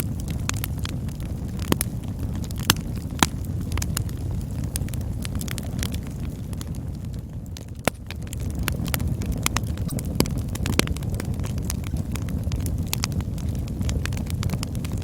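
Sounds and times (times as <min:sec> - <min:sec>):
burning wood crackling and popping: 0:00.0 - 0:15.0
campfire flame rumble: 0:00.0 - 0:15.0.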